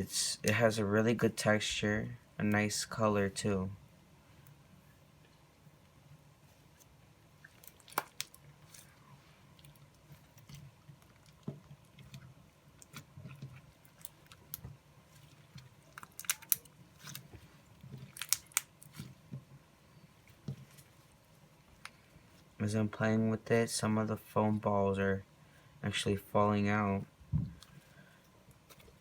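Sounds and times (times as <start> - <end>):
slime crackling when squeezed: 18.0 - 19.0.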